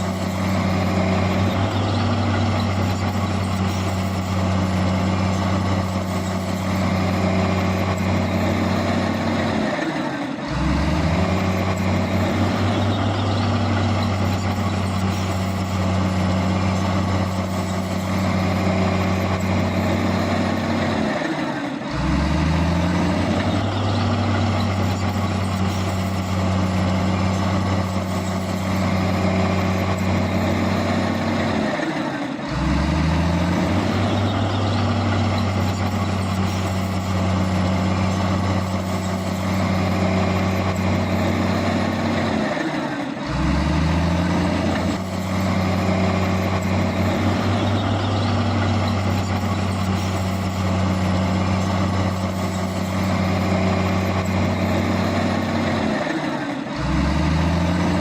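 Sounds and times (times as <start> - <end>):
heavy diesel engine under load: 0.0 - 58.0.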